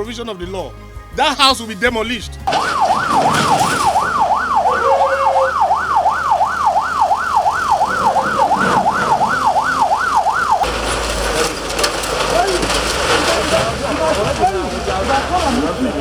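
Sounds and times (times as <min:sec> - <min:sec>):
rumbling noise: 0:02.4 - 0:16.0
siren yelping: 0:02.5 - 0:10.7.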